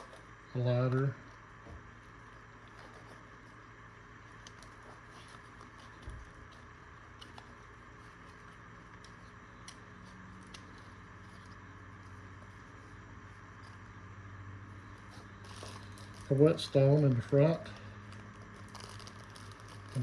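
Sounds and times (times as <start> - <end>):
small gear clicking and rustling: 15.0 - 20.0.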